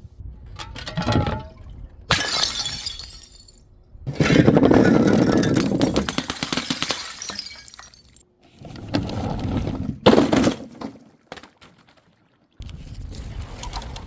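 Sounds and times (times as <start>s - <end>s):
glass shards tinkling: 2.1s - 3.6s
glass smashing: 2.1s - 3.6s, 4.9s - 8.2s.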